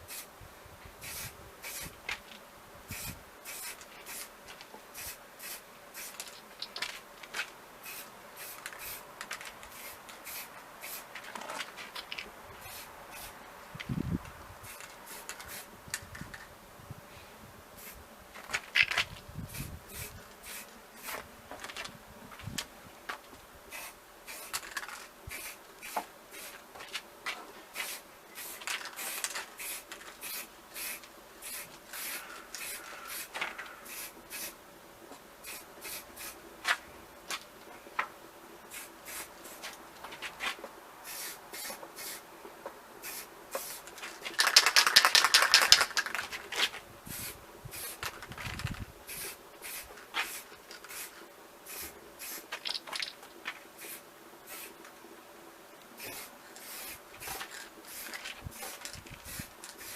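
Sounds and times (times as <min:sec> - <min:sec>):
aerosol spray paint hiss: 0:00.0 - 0:00.4, 0:01.0 - 0:02.0, 0:02.9 - 0:06.4, 0:07.8 - 0:09.1, 0:09.7 - 0:11.2, 0:12.6 - 0:16.2, 0:17.1 - 0:18.0, 0:18.8 - 0:21.3, 0:23.7 - 0:26.6, 0:27.7 - 0:34.6, 0:35.4 - 0:36.8, 0:38.6 - 0:39.8, 0:41.0 - 0:42.3, 0:43.0 - 0:46.2, 0:47.0 - 0:53.1, 0:53.7 - 0:54.8, 0:56.0 - 0:59.9.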